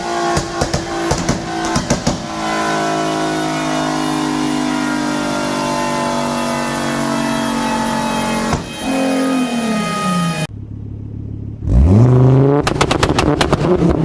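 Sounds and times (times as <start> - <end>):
car engine revving: 0.0 - 14.0
exhaust pops and bangs: 0.1 - 5.0, 8.2 - 9.0, 12.6 - 14.0.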